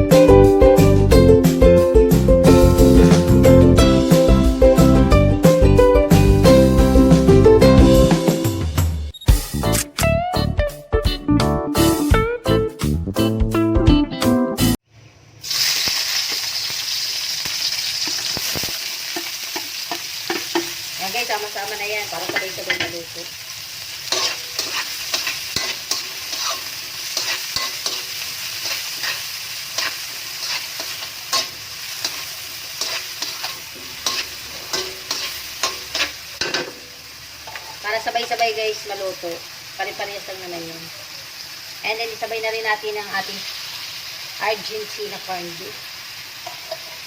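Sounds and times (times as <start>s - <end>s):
food sizzling in oil: 0.0s - 8.8s, 15.3s - 47.0s
utensil scraping a pan: 24.1s - 36.9s.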